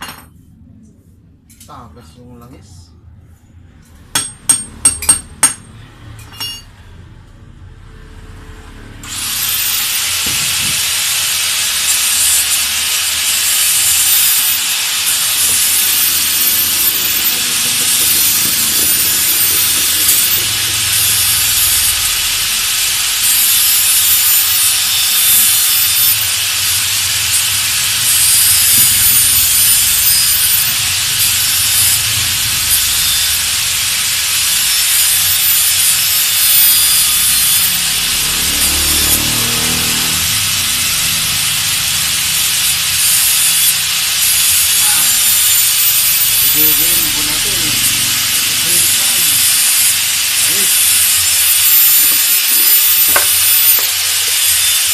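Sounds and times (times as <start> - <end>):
steady loud hiss: 9.0 - 54.9.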